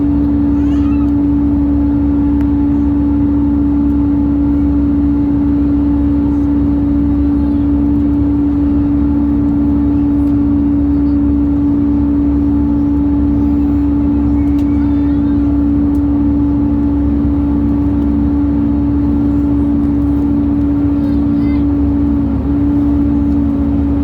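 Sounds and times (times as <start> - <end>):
loud steady cabin hum: 0.0 - 24.0
low rumble: 1.1 - 24.0.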